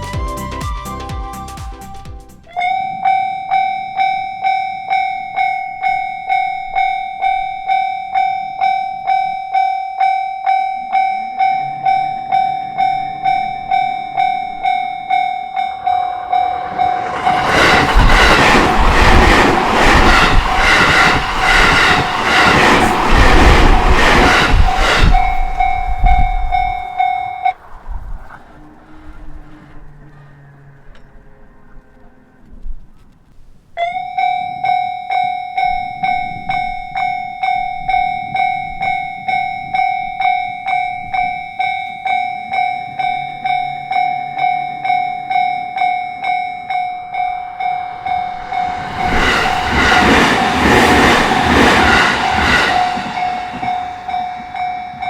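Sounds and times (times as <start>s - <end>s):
level-crossing bell ringing: 2.6s - 17.8s, 34.0s - 49.4s
train rumbling past: 10.9s - 31.7s, 43.0s - 55.0s.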